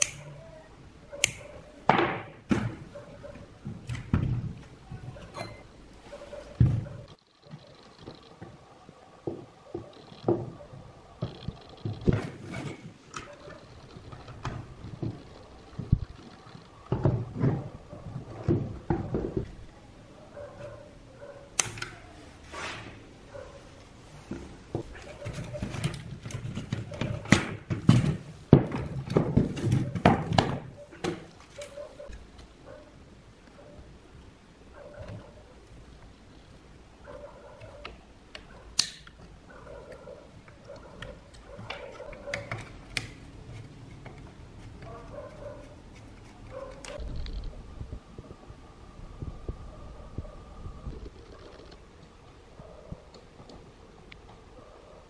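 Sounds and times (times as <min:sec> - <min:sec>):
knocking and clattering of hard parts: 0:16.9 - 0:19.7, 0:24.3 - 0:31.4.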